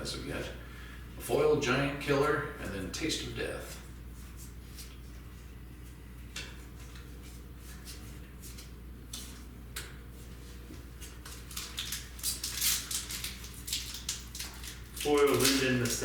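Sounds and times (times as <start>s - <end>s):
cards and wrappers rustling: 11.0s - 16.0s.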